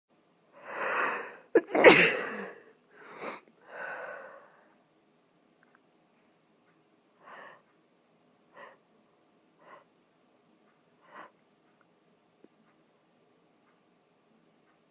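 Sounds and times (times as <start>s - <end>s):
heavy breaths: 0.6s - 1.5s, 2.2s - 4.8s, 7.2s - 7.7s, 8.5s - 8.9s, 9.6s - 9.9s, 11.0s - 11.4s
person sneezing: 1.6s - 3.4s.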